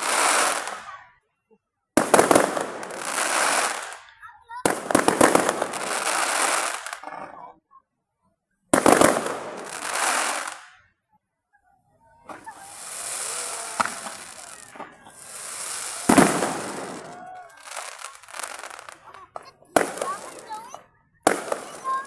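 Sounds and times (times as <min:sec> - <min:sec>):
fireworks bursting: 0:00.0 - 0:01.0, 0:02.0 - 0:07.1, 0:08.7 - 0:10.8, 0:12.2 - 0:22.0
fireworks crackling hiss: 0:00.0 - 0:01.0, 0:02.0 - 0:07.1, 0:08.8 - 0:10.8, 0:12.3 - 0:22.0
sharp firework bang: 0:16.0 - 0:17.2.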